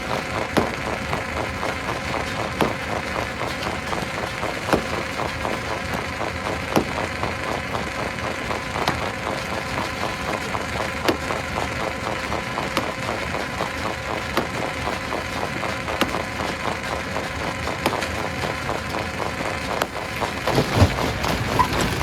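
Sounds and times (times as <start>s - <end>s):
stone crusher clatter and hum: 0.0s - 22.0s
rocks cracking: 17.8s - 22.0s.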